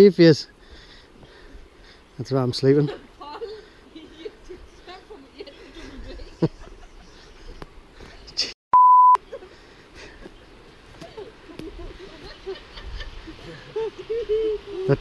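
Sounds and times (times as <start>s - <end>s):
censor bleep: 8.8s - 9.2s.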